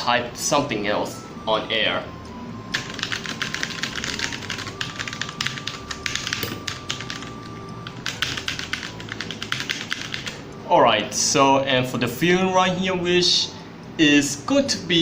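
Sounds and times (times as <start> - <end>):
mechanical keyboard typing: 2.7 - 10.4.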